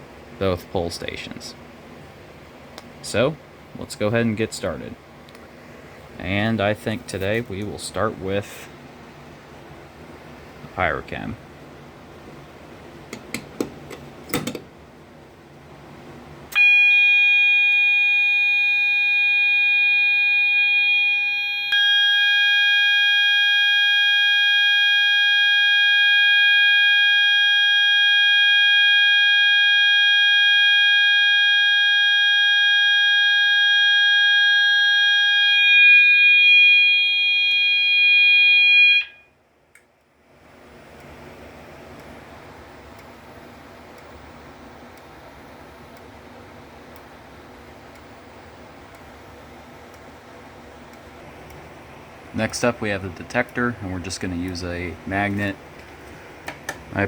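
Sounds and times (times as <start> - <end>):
fire alarm horn steady tone: 16.5 - 39.4.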